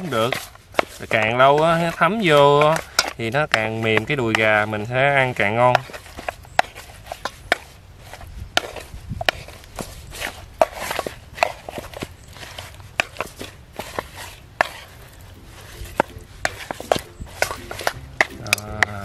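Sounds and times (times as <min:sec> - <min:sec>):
rustling swishes: 0:05.3 - 0:19.0.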